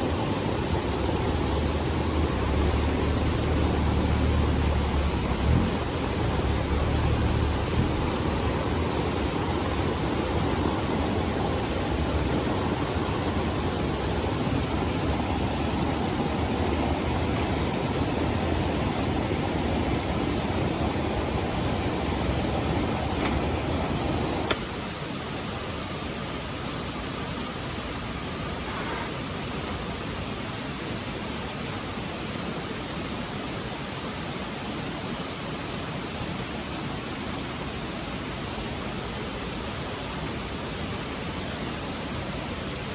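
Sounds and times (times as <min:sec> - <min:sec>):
pressure lantern hissing: 0:00.2 - 0:24.6.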